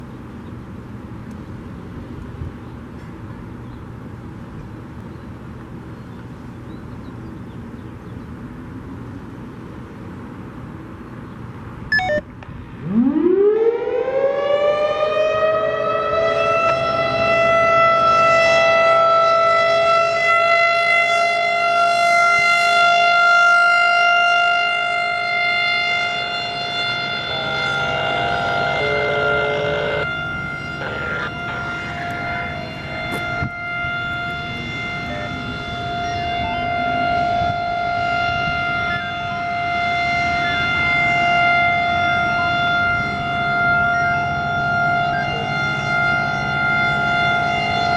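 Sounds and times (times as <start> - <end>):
warning siren winding up: 11.9 - 47.9.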